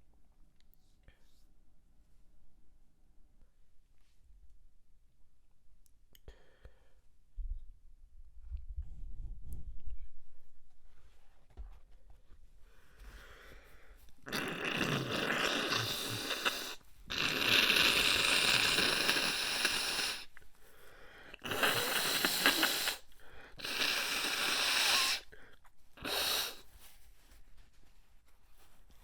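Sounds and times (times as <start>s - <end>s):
person blowing nose hard: 14.2s - 20.4s, 21.3s - 27.3s.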